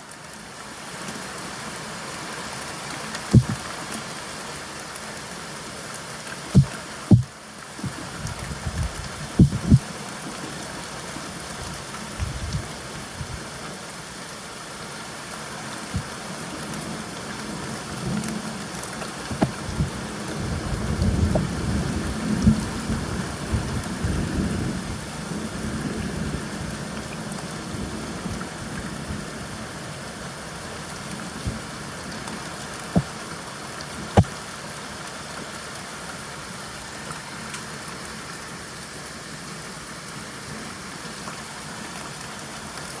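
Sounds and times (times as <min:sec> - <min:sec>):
steady rain hissing: 0:00.0 - 0:43.0
loud raindrops striking: 0:03.2 - 0:03.9, 0:06.5 - 0:09.9, 0:17.4 - 0:24.8, 0:31.0 - 0:34.5.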